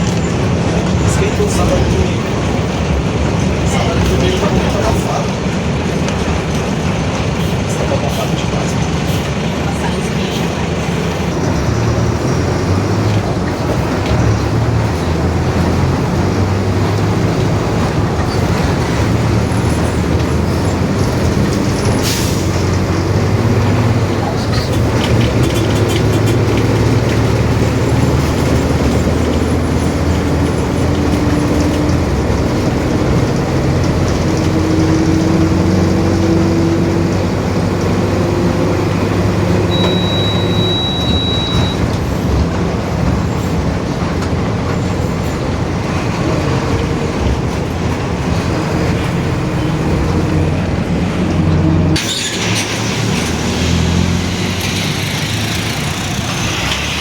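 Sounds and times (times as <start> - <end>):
bus engine with whining drone: 0.0 - 57.0
high beep: 39.7 - 41.8.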